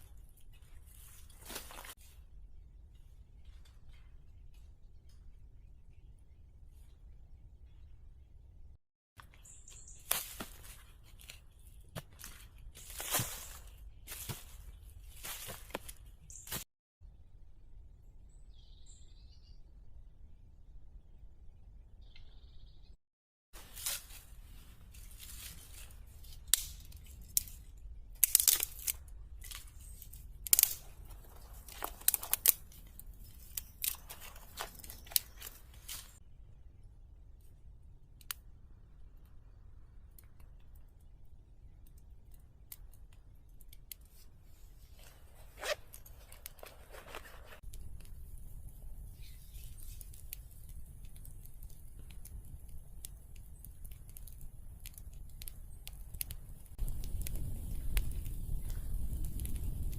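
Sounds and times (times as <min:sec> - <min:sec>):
sharp snipping and tearing: 0:25.3 - 0:36.2.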